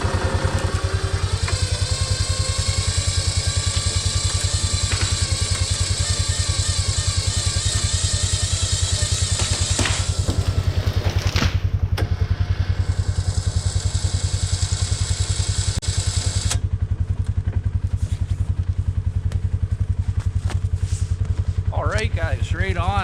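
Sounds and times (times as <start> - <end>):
electric winch whining: 0.0 - 17.4
atv engine running: 0.0 - 23.0
tree cracking: 8.0 - 11.8.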